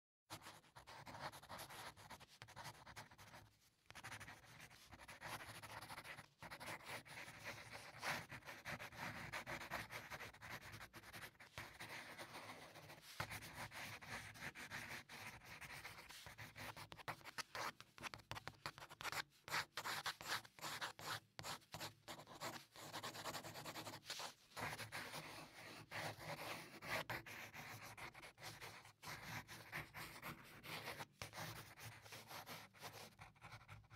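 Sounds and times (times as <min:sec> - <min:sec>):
pencil scratching on paper: 0:00.3 - 0:33.9.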